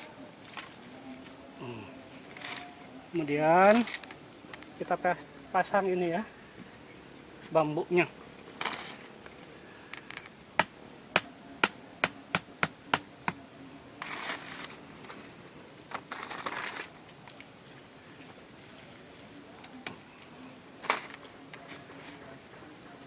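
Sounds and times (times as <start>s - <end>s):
rustling: 0.0s - 5.1s, 7.4s - 10.4s, 14.0s - 23.0s
hammer striking bamboo stake: 10.6s - 13.4s.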